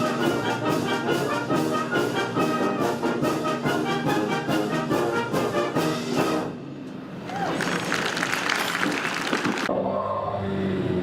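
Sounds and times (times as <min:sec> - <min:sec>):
orchestra with brass playing: 0:00.0 - 0:06.8.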